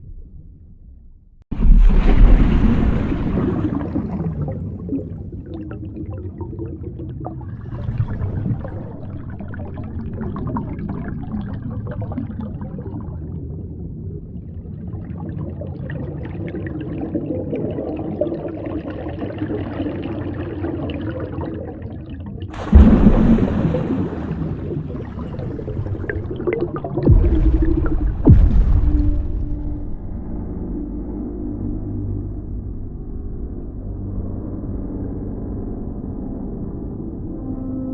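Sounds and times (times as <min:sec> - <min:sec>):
underwater water rushing: 0:01.5 - 0:30.4.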